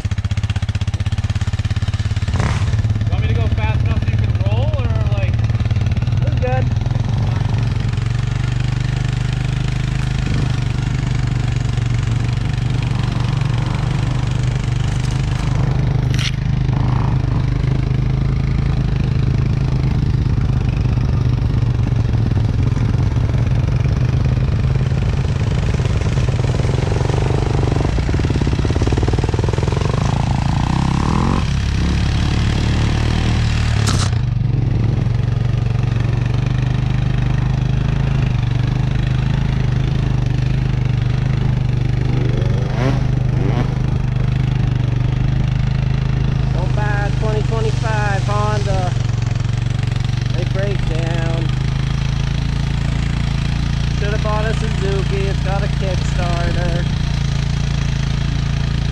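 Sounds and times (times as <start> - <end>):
motorcycle engine running: 0.0 - 58.9.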